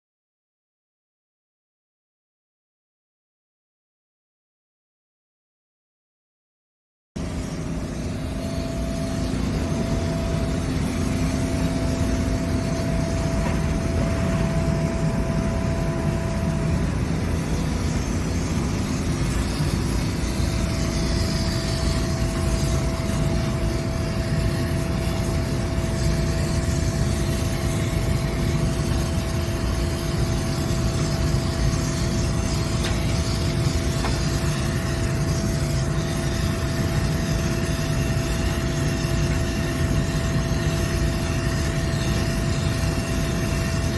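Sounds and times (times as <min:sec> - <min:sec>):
machinery hum tones: 0:07.2 - 0:43.9
machinery low rumble: 0:07.2 - 0:43.9.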